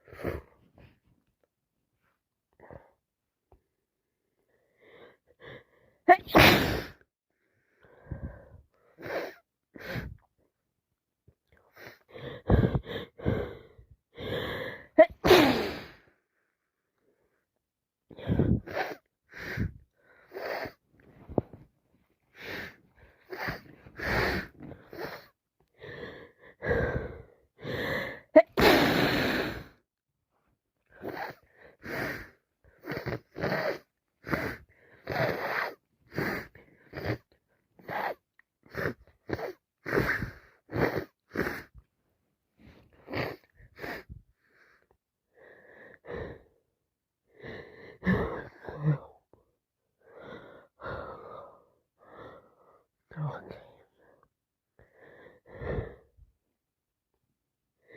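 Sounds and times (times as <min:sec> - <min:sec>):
girl wheezy breathing: 0:04.6 - 0:10.3, 0:11.7 - 0:16.2, 0:18.1 - 0:21.5, 0:22.3 - 0:29.8, 0:30.9 - 0:41.8, 0:42.6 - 0:46.6, 0:47.3 - 0:49.2, 0:50.0 - 0:53.6, 0:54.8 - 0:56.2
girl sneezing: 0:06.1 - 0:07.0, 0:15.0 - 0:15.9, 0:28.4 - 0:29.2.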